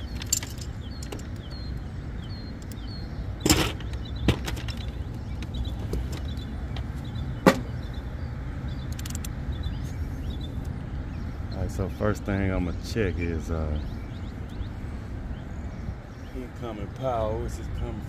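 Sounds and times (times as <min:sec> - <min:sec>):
sharp knocks and clicks: 0:03.4 - 0:07.8.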